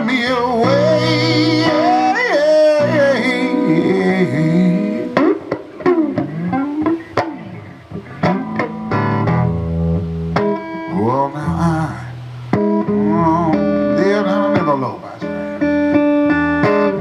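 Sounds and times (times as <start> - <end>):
blues guitar lead with bending notes: 0.0 - 17.0.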